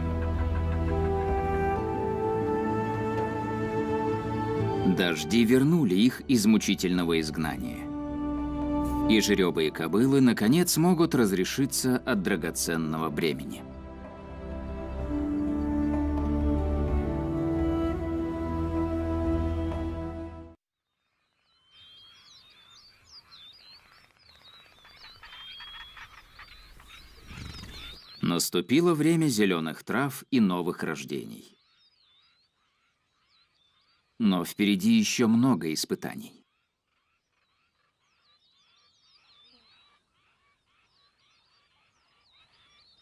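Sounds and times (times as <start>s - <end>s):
faint birds chirping: 0.0s - 20.2s, 20.8s - 43.0s
small animals chirping: 21.0s - 28.4s.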